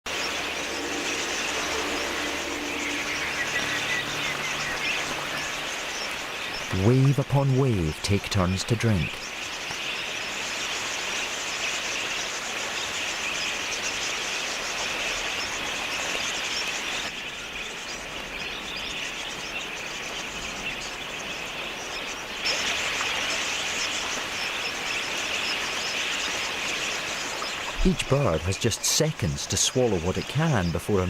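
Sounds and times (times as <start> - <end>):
budgerigar flock chattering: 0.4 - 11.2, 22.4 - 31.0.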